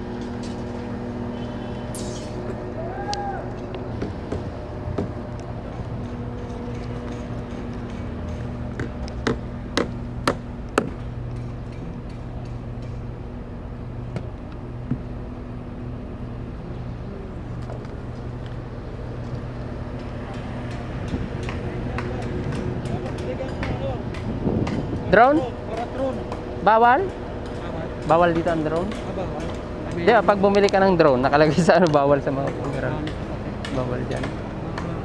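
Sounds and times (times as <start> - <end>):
low mechanical hum: 0.0 - 35.0
sharp knocks: 7.1 - 13.0.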